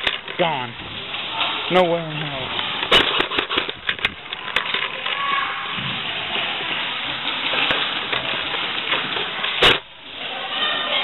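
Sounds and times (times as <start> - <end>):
loud crack: 2.6 - 6.1, 7.6 - 10.0.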